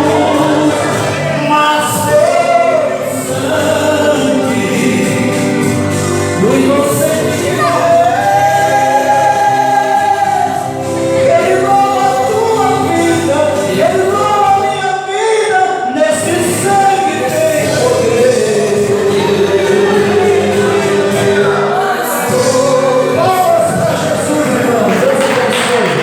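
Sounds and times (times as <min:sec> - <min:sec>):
group singing gospel song: 0:00.0 - 0:26.0
instrumental backing: 0:00.0 - 0:26.0.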